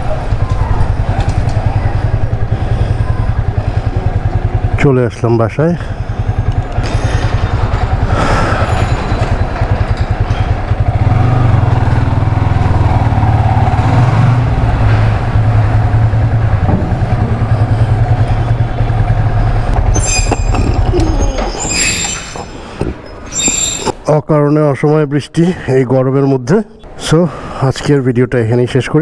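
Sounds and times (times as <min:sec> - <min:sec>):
motorcycle engine running: 0:00.0 - 0:23.8
wind buffeting microphone: 0:05.8 - 0:21.6.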